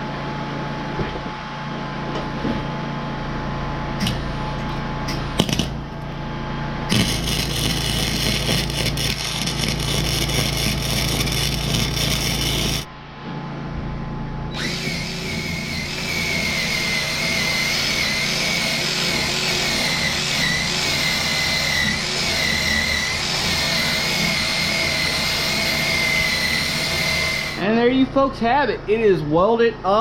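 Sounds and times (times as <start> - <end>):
angle grinder on steel: 6.9 - 12.9, 14.6 - 27.6.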